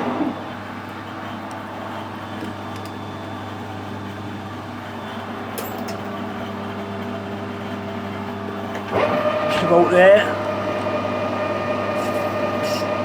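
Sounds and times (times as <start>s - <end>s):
metal lathe running: 0.6s - 13.0s.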